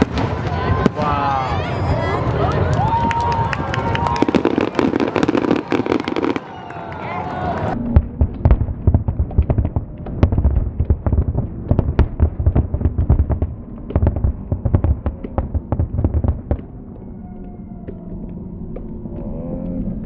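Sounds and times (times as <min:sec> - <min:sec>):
fireworks bursting: 0:00.0 - 0:16.8
low rumble: 0:07.4 - 0:20.0.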